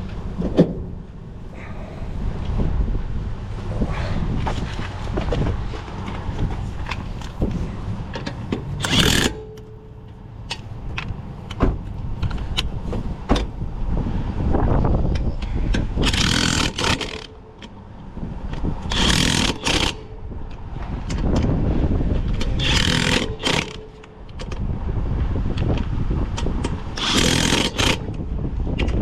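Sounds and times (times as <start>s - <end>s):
wind rumble on microphone: 0.0s - 29.0s
tools clicking: 8.1s - 9.8s, 15.1s - 17.8s, 18.5s - 21.5s, 22.3s - 24.6s, 26.4s - 28.2s
impact wrench running: 8.7s - 9.8s, 16.0s - 17.4s, 18.8s - 20.2s, 22.4s - 24.1s, 27.0s - 28.2s.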